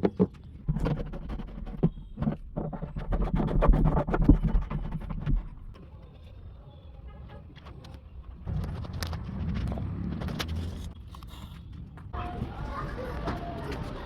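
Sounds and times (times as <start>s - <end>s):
plastic fittings clicking and scraping: 0.0s - 5.8s.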